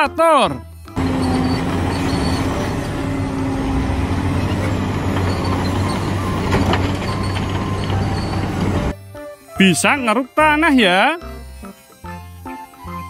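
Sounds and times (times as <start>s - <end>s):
excavator diesel engine humming: 0.9s - 9.0s.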